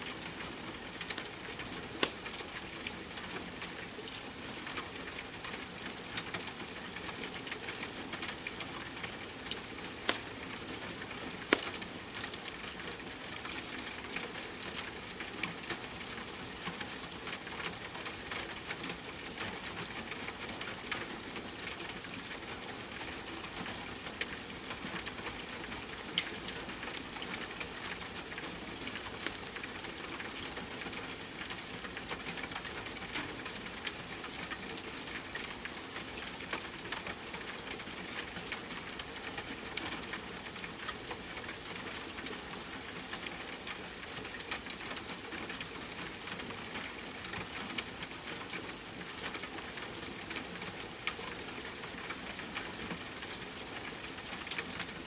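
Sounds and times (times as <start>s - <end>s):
rain falling: 0.0s - 55.0s
wood fire crackling: 2.0s - 2.6s, 9.8s - 12.2s.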